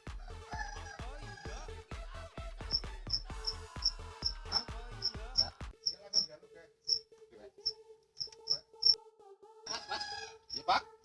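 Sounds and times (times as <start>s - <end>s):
background music with low beat: 0.0s - 7.0s.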